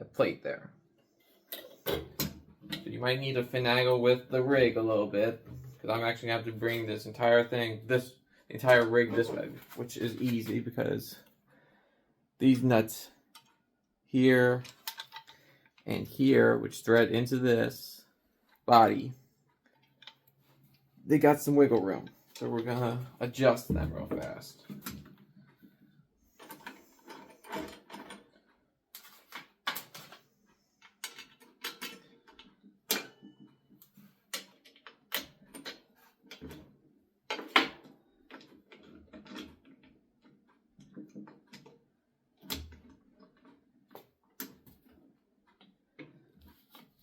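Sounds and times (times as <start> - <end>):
tools and metal parts clinking: 14.6 - 15.9, 26.4 - 33.6.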